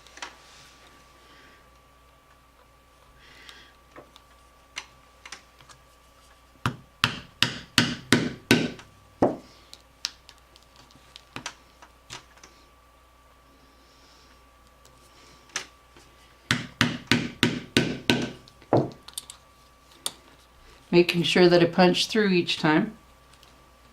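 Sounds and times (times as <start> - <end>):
mallet striking leather punch: 6.6 - 9.4, 16.5 - 18.9.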